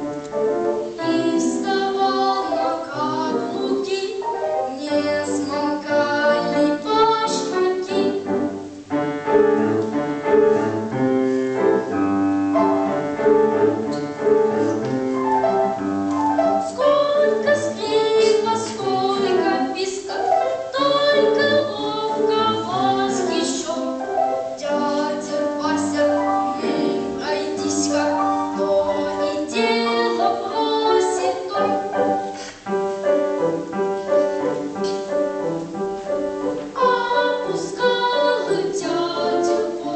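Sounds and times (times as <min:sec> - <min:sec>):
piano accompaniment: 0:00.0 - 0:39.9
boy singing: 0:01.0 - 0:08.2, 0:16.7 - 0:32.0, 0:36.8 - 0:39.9.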